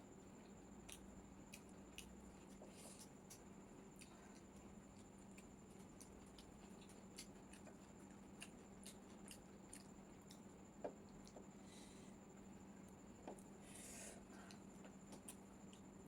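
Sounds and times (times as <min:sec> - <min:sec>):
quiet chewing: 0:00.4 - 0:16.0.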